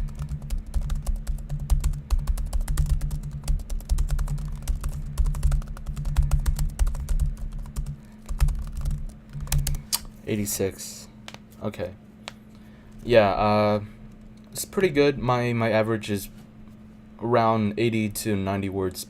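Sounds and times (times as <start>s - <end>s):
fast typing on laptop keyboard: 0.0s - 9.8s.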